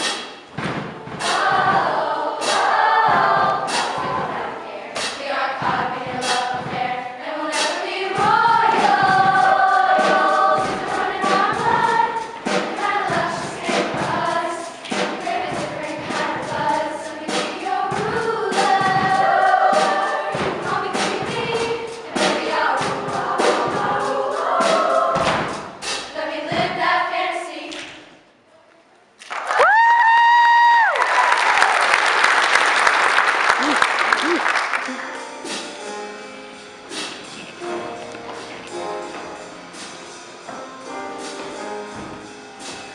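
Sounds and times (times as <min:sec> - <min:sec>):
choir singing in parts: 0:01.0 - 0:28.2.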